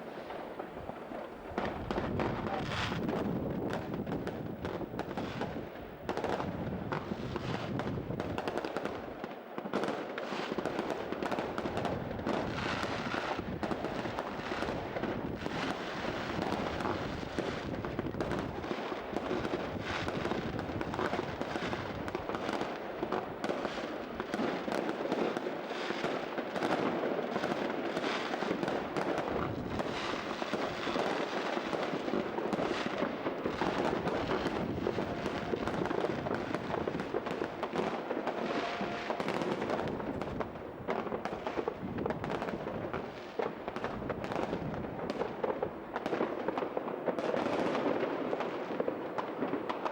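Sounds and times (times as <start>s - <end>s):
fireworks bangs and crackling: 0.0s - 49.9s.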